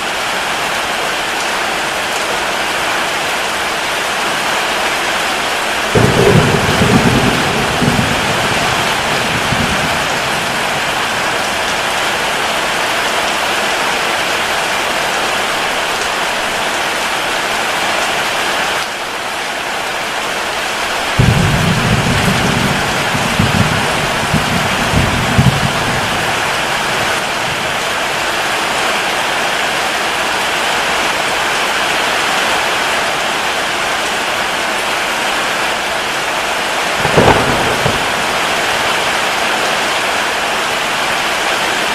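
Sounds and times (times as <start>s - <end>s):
heavy rain pouring: 0.0s - 41.9s
thunder rumbling: 5.7s - 12.8s, 21.0s - 29.0s, 36.9s - 40.0s.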